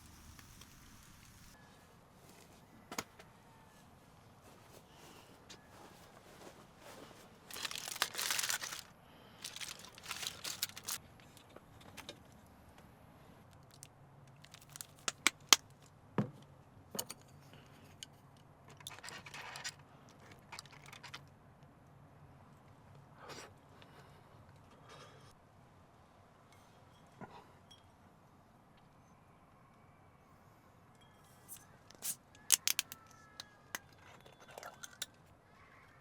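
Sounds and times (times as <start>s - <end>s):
rustling and crinkling: 4.4s - 12.2s, 13.6s - 15.8s.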